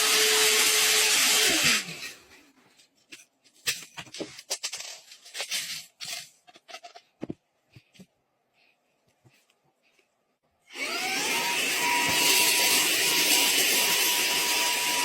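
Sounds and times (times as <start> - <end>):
handheld vacuum cleaner running: 0.0 - 2.2, 10.7 - 15.0
clicks and rustles of handling: 2.4 - 8.2
vacuum motor spinning down: 10.7 - 15.0.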